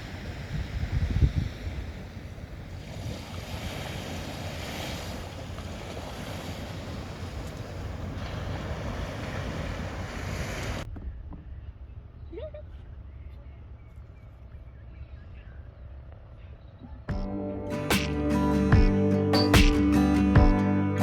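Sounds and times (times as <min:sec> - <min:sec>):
sea waves washing on shore: 0:00.0 - 0:10.9
wind rumbling on microphone: 0:00.0 - 0:17.1.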